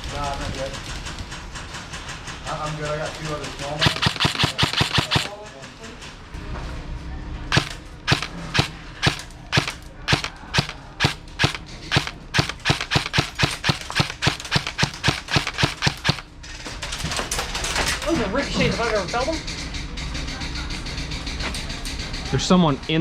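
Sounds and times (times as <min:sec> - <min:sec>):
airsoft bbs cracking off hard surfaces: 0:03.8 - 0:05.4, 0:07.5 - 0:16.3.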